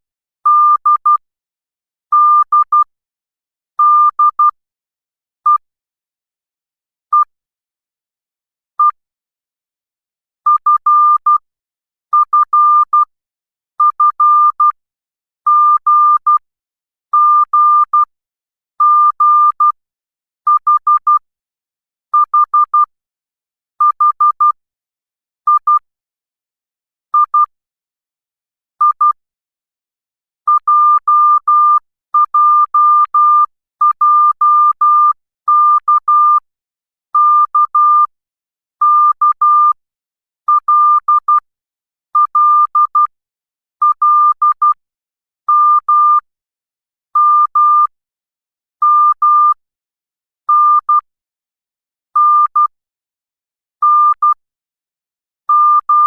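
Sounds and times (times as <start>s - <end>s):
morse code beeps: 3.8s - 4.6s, 10.5s - 11.4s, 27.2s - 27.5s, 30.5s - 36.5s, 37.2s - 38.1s, 38.8s - 39.8s, 40.5s - 41.5s, 42.2s - 43.1s, 43.8s - 44.8s, 45.5s - 46.3s, 47.2s - 48.0s, 48.8s - 49.6s, 50.5s - 51.1s, 52.2s - 52.8s, 53.8s - 54.4s, 55.5s - 56.0s.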